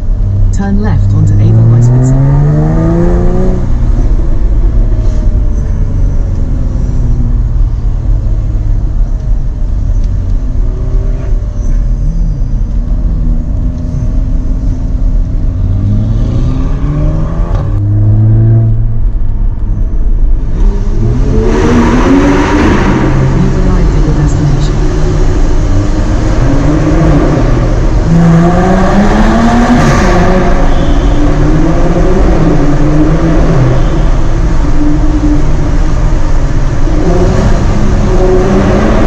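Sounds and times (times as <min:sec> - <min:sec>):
car engine accelerating: 0:00.0 - 0:39.0.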